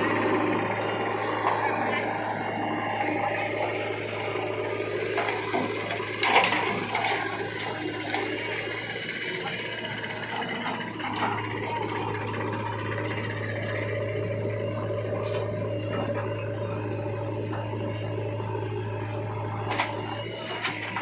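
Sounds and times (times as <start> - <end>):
heavy machinery diesel engine: 0.0 - 21.0.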